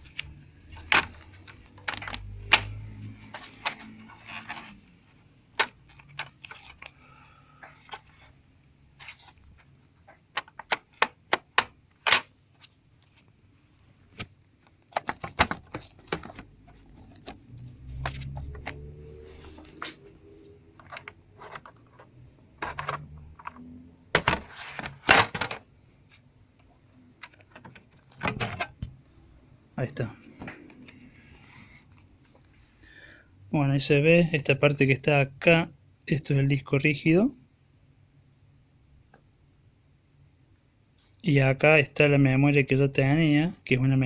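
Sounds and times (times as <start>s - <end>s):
dull handling noise: 9.0s - 26.3s.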